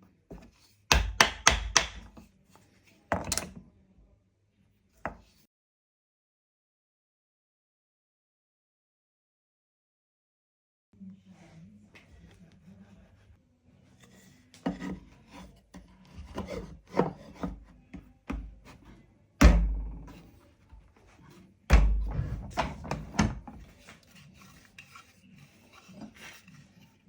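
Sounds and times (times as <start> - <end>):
heavy wooden knocks: 21.7 - 23.4.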